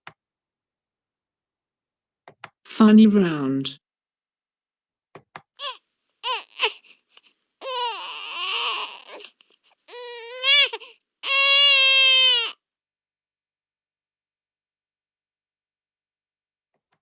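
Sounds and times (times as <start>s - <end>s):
baby crying: 5.6s - 12.6s.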